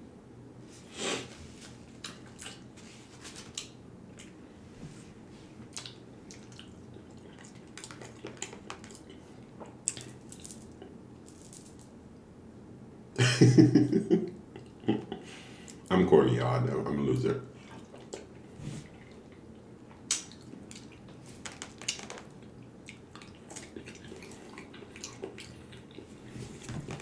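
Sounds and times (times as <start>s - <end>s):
wet chewing: 5.7s - 10.9s, 17.6s - 27.0s.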